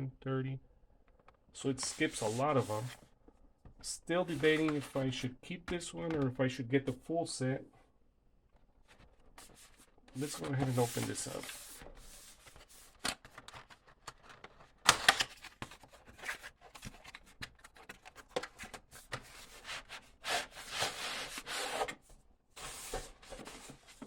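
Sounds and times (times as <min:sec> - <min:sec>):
rubbing and scraping: 0:01.8 - 0:03.0, 0:08.9 - 0:12.9.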